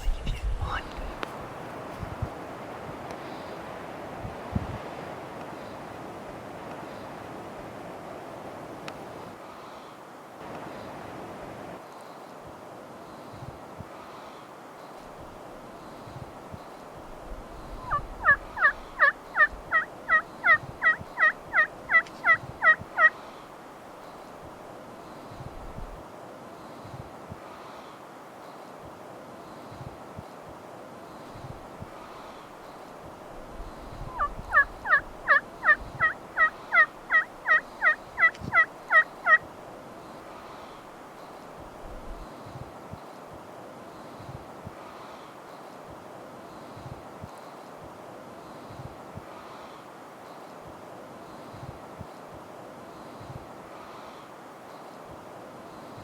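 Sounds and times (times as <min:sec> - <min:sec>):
turkey yelps: 0:17.8 - 0:23.1, 0:34.0 - 0:39.4.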